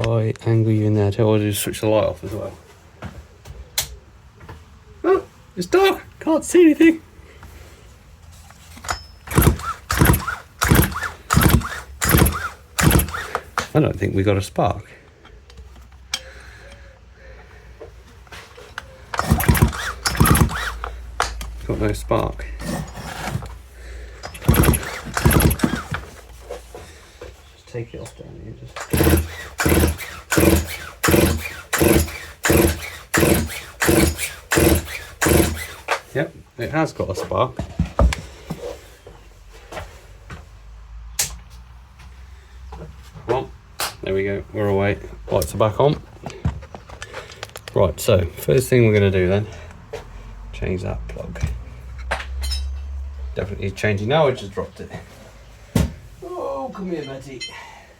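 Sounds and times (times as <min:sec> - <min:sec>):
engine cranking without firing: 0:08.8 - 0:13.7, 0:19.0 - 0:26.2, 0:28.8 - 0:36.0
chainsaw starter cord pulls: 0:08.8 - 0:13.8, 0:19.1 - 0:21.0, 0:24.2 - 0:26.2, 0:28.8 - 0:36.0.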